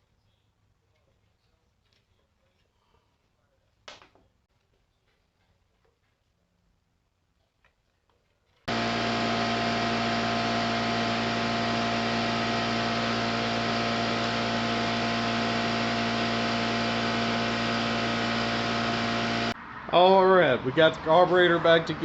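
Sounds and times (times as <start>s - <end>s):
steady machine whir: 8.7s - 19.6s.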